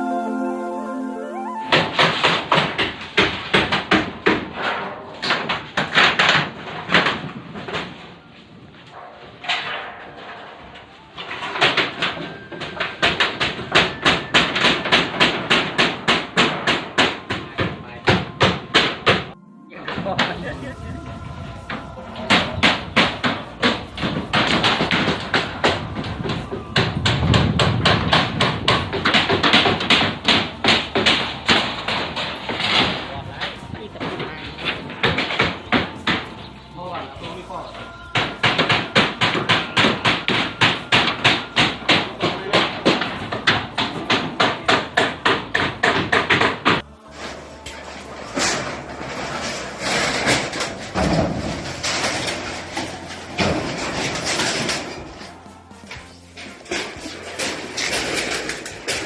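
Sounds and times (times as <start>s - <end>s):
hammer nailing: 2.0s - 8.0s, 11.2s - 19.3s, 22.3s - 33.1s, 38.2s - 46.8s.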